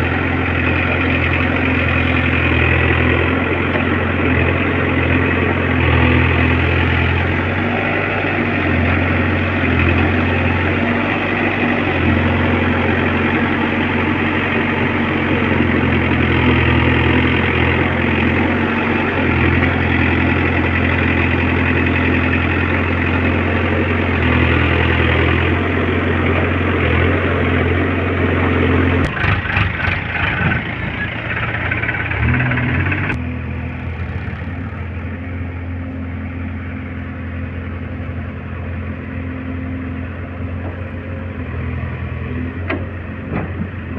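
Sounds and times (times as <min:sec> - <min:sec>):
diesel engine humming: 0:00.0 - 0:43.9
irregular knocks and clatter: 0:42.7 - 0:43.8.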